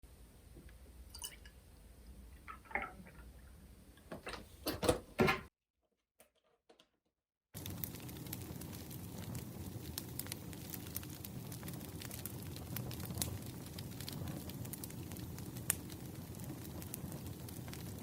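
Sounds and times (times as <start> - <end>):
handling knocks: 4.0 - 5.5
wood fire crackling and popping: 7.6 - 18.0.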